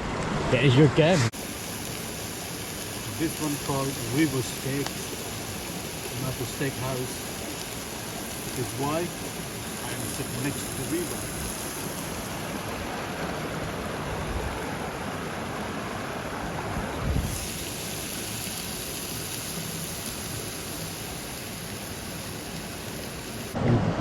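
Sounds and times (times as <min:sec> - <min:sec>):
river water running: 0:00.5 - 0:23.6
high hiss: 0:01.3 - 0:13.6, 0:17.0 - 0:23.6.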